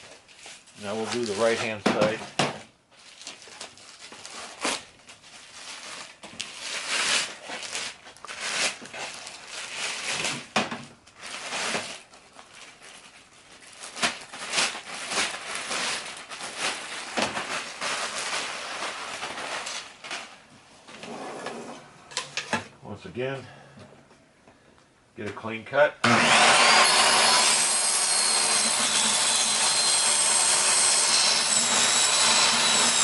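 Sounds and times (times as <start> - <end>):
rustling and crinkling: 0.0 - 22.6.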